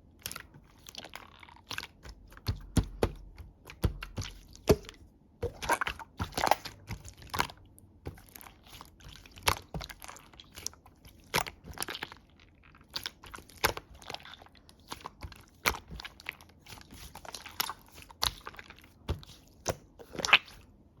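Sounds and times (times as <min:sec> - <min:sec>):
slime squished by hand: 0:00.2 - 0:20.6.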